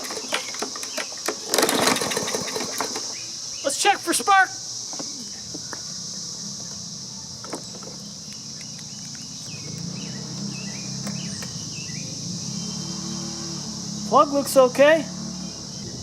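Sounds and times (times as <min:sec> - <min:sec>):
crickets chirping: 0:00.0 - 0:16.0.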